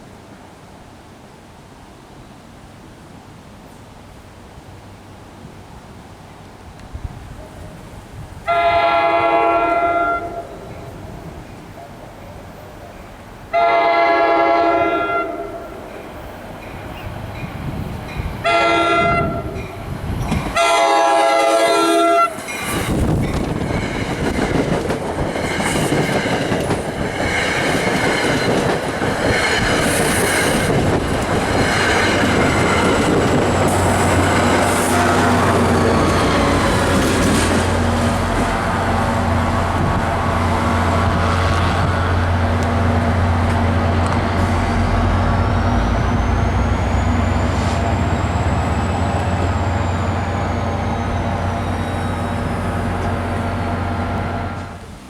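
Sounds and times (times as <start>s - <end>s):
train air horn blasts: 8.5s - 10.8s, 13.5s - 15.8s, 18.4s - 19.7s, 20.5s - 22.9s, 34.7s - 36.0s
train wheels clicking over rail joints: 19.5s - 20.6s, 22.3s - 39.0s, 41.4s - 55.0s
low diesel drone: 41.8s - 54.8s.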